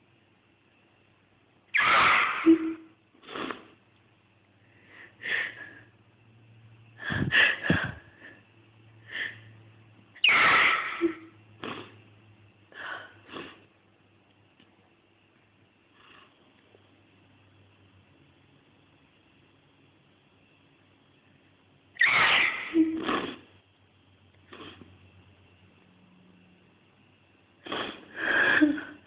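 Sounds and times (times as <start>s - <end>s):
person sneezing loudly: 1.8s - 3.5s, 22.0s - 23.4s
person sniffing: 1.8s - 3.7s, 24.5s - 24.8s, 27.6s - 28.8s.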